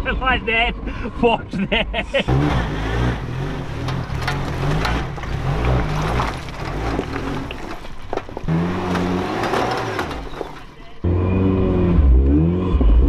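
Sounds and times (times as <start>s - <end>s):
vehicle knocking against rock: 2.2s - 11.1s
vehicle engine revving: 2.2s - 11.2s.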